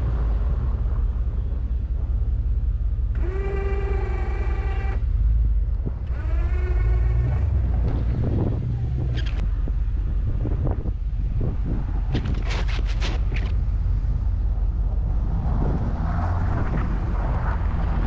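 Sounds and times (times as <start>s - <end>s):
truck engine rumbling: 0.0s - 18.0s
hydraulic pump whining: 3.1s - 5.1s, 5.9s - 9.4s.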